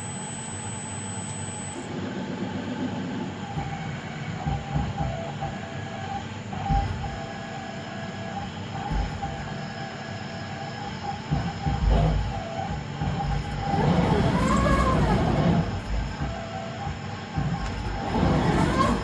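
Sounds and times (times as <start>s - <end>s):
milling machine motors whining: 0.0s - 19.0s
low thumps: 6.5s - 7.3s, 8.8s - 9.5s, 11.3s - 19.0s.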